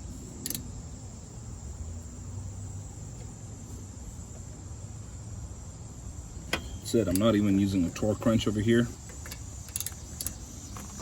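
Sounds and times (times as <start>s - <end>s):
cricket trill: 0.0s - 11.0s
low background hum: 0.0s - 11.0s
sharp click: 0.4s - 0.7s.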